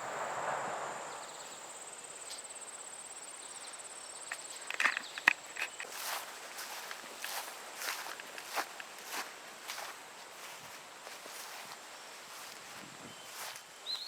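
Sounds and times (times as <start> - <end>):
footsteps: 4.3 - 14.0.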